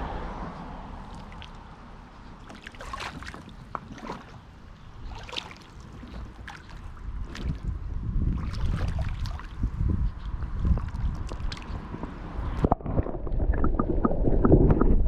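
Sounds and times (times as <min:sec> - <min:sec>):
low rumble: 0:00.0 - 0:02.4, 0:09.7 - 0:15.0
pond water sloshing and gurgling: 0:00.0 - 0:15.0
small splashes and drips: 0:01.0 - 0:11.9.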